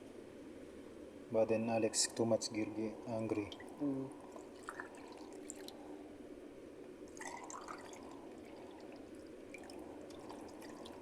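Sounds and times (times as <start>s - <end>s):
water dripping and trickling: 3.3s - 5.8s, 7.1s - 11.0s.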